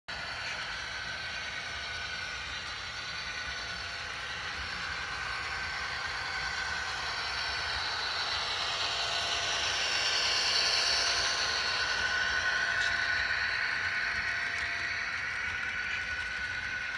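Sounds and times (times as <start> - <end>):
model locomotives whirring on track: 0.1 - 16.9.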